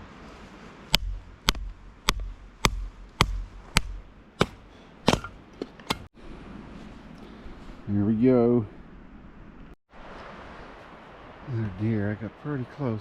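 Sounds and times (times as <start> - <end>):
axe chopping firewood: 0.9 - 6.1.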